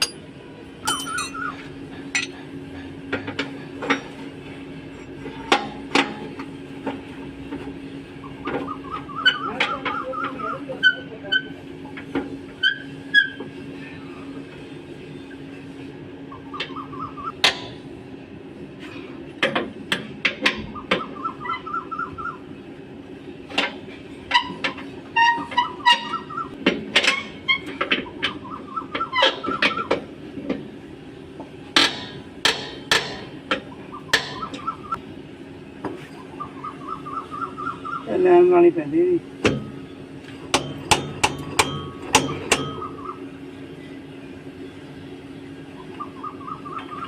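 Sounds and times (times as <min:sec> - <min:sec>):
sharp knocks and taps on metal: 0:40.5 - 0:42.8.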